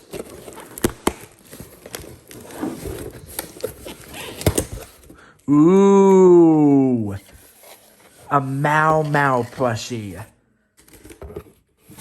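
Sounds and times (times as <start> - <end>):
cardboard and packaging rustling: 0.0 - 5.4, 6.4 - 12.0.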